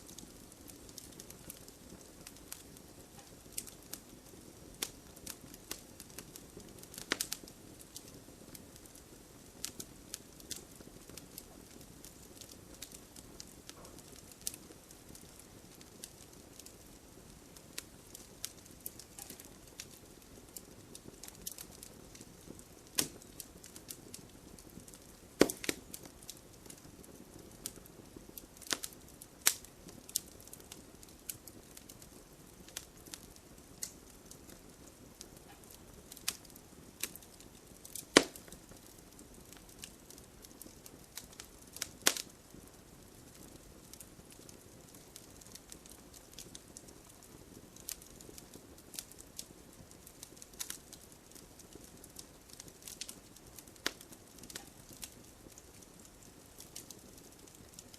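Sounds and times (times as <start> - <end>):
fire hissing: 0.0 - 57.9
wood crackling and popping: 0.0 - 57.9.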